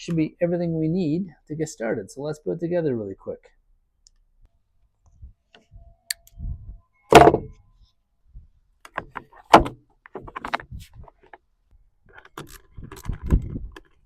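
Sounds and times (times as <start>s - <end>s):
chainsaw parts knocking and clunking: 7.1s - 7.6s, 8.8s - 11.4s.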